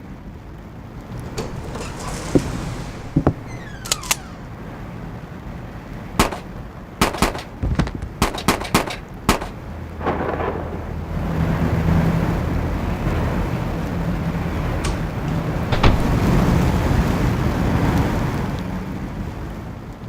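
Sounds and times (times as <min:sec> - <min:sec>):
sharp bangs: 0:06.2 - 0:11.6, 0:14.6 - 0:17.2.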